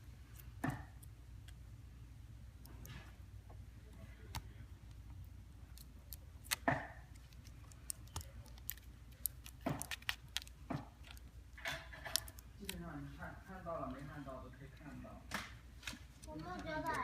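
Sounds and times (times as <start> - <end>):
steady low hum: 0.0 - 17.0
plastic parts being handled: 3.9 - 12.9.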